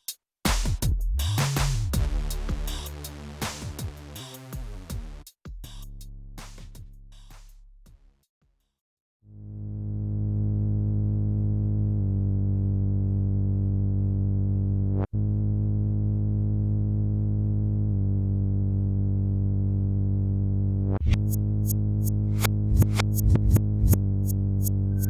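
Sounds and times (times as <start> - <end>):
drum machine hits: 0.5 - 8.1, 22.7 - 24.0.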